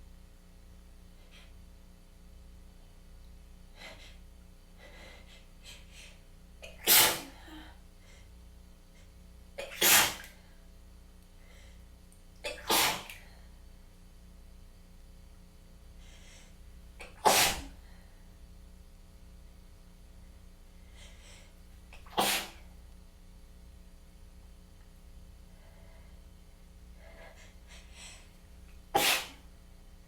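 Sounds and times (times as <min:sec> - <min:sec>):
person sneezing: 0:06.6 - 0:07.6, 0:09.6 - 0:10.4, 0:12.5 - 0:13.2, 0:17.0 - 0:17.8, 0:22.0 - 0:22.7, 0:28.9 - 0:29.5.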